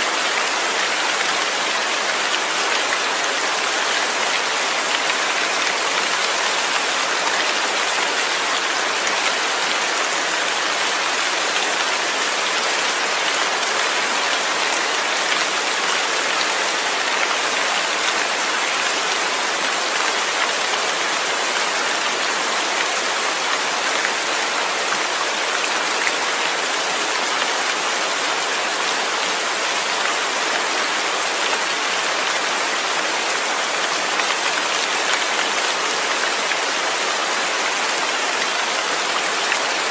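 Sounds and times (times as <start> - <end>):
steady rain: 0.0 - 39.9.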